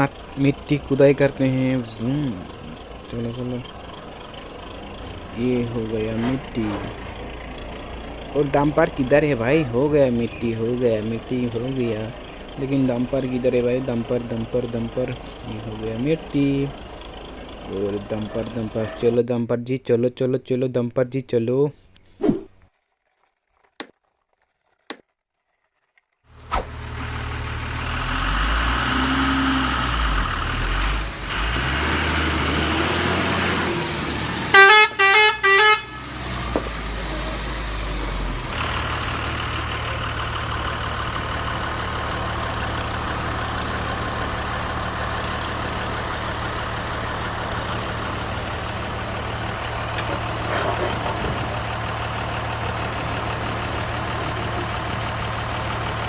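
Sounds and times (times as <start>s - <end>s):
truck engine idling: 0.0s - 19.3s, 26.3s - 56.0s
truck horn honks: 34.4s - 36.4s.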